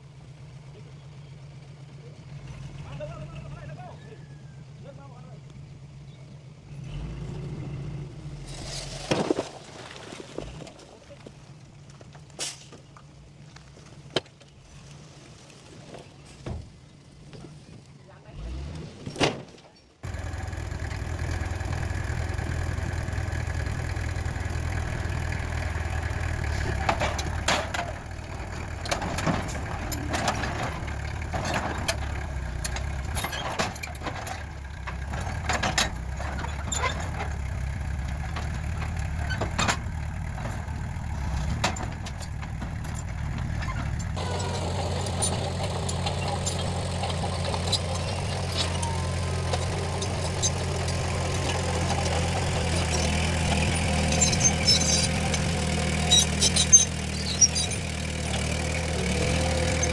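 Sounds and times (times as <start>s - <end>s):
sharp metal clanks and knocks: 20.0s - 58.5s
heavy diesel machine running: 20.0s - 59.9s.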